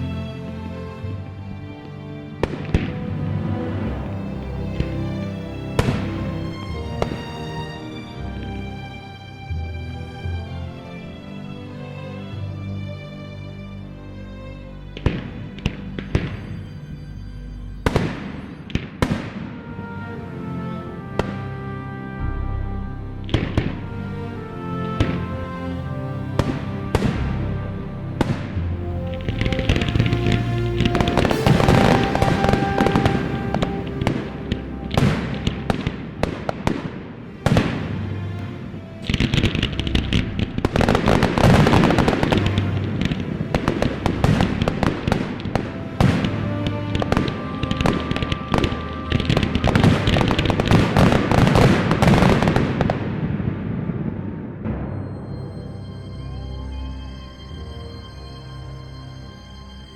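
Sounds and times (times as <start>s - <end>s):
music: 0.0s - 59.9s
fireworks bangs and crackling: 46.9s - 54.5s.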